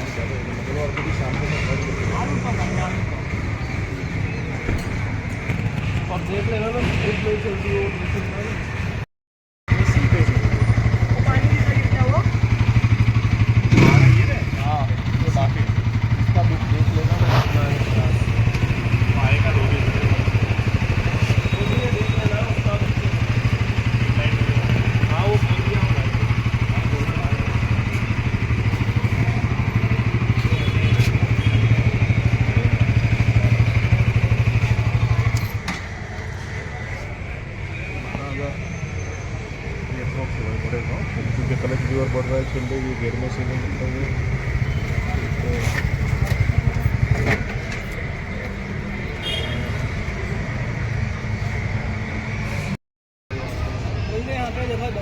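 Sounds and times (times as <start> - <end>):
motorcycle engine idling: 9.7 - 36.9, 39.5 - 50.3.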